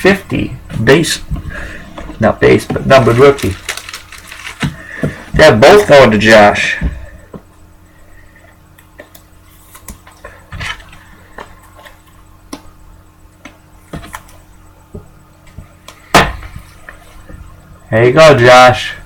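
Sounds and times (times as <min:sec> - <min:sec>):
faint steady hum: 0:00.0 - 0:19.0
cards clicking and rustling: 0:03.0 - 0:04.8.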